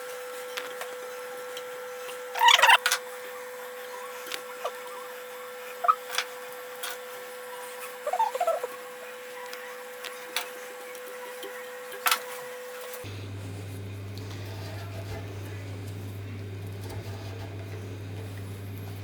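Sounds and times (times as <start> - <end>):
short squeaks: 2.4 - 2.9
steady hum: 13.0 - 19.0.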